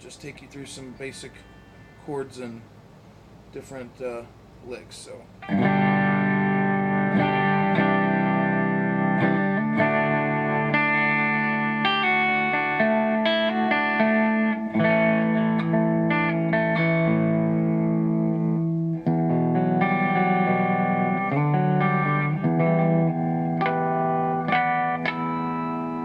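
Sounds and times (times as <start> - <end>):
clean electric guitar chords: 5.4 - 26.0.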